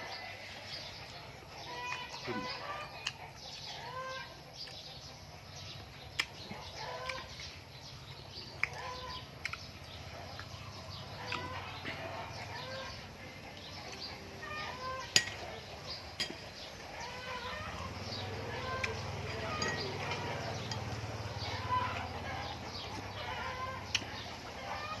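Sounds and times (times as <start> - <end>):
birds calling: 0.0 - 25.0.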